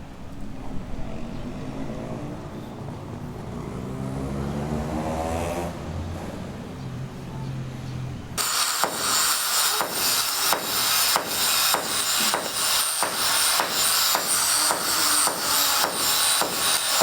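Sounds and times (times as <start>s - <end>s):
hammer strikes: 8.4s - 17.0s
steady hiss: 8.4s - 17.0s.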